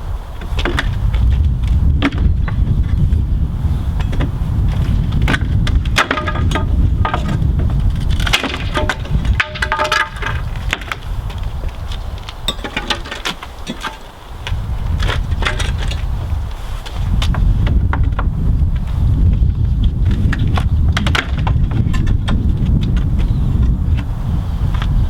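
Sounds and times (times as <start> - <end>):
steady low rumble: 0.0 - 12.6
wood cracking and splintering: 4.0 - 16.1.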